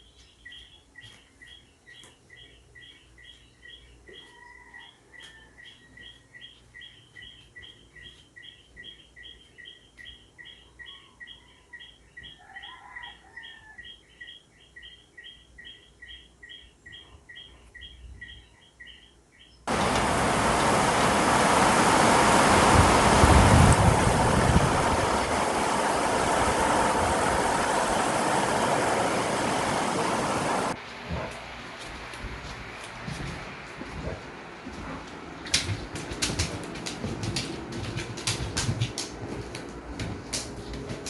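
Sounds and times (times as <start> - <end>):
loud steady rushing noise: 19.7 - 31.2.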